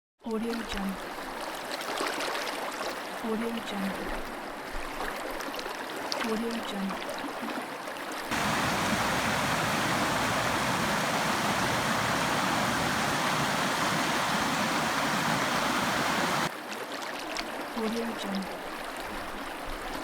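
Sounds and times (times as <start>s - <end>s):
steady rushing noise: 8.3s - 16.5s.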